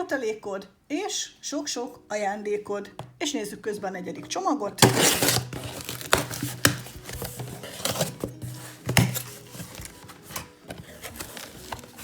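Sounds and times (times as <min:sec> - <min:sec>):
quiet background music: 0:00.0 - 0:12.0
packaging knocks and rustles: 0:04.8 - 0:12.0.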